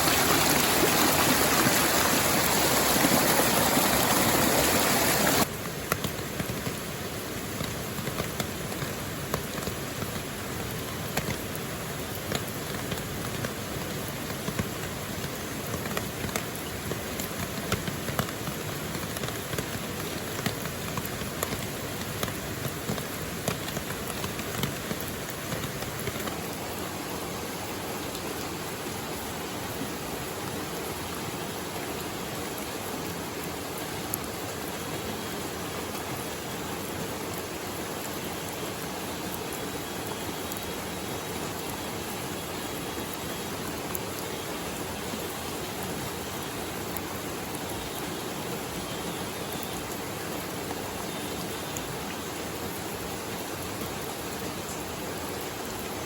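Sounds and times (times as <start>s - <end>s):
rain drop hits: 0.0s - 31.1s
flowing water rushing: 0.0s - 56.0s.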